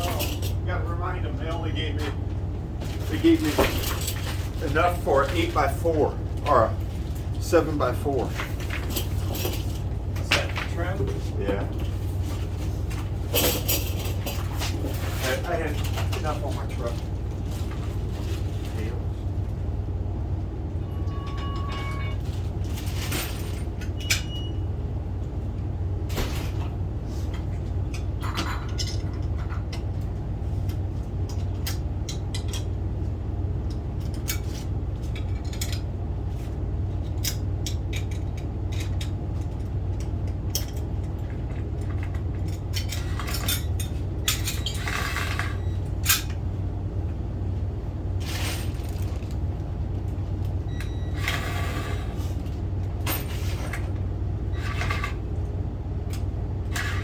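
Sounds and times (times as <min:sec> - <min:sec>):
low hum: 0:16.6 - 0:57.0.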